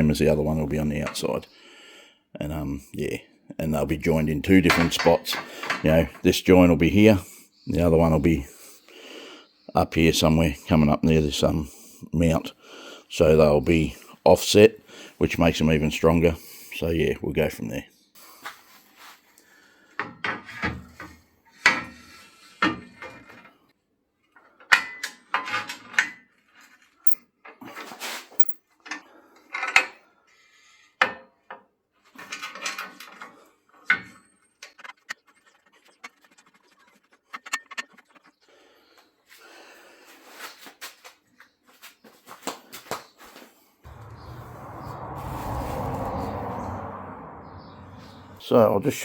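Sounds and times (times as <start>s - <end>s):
steady rushing noise: 43.9s - 48.6s.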